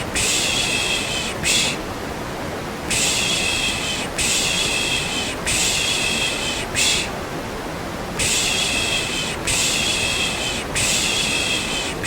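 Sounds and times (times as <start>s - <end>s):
steady white noise: 0.0s - 12.0s.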